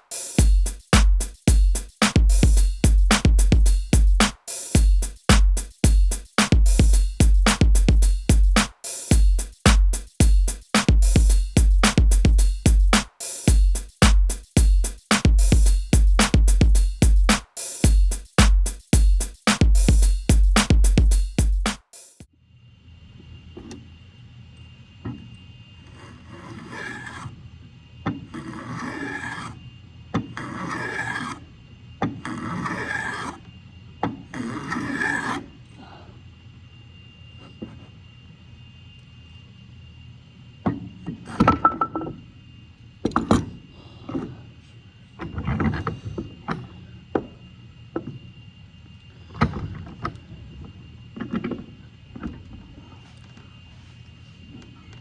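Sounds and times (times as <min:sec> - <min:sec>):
hand plane shaving wood: 0:26.0 - 0:27.3, 0:28.4 - 0:29.5.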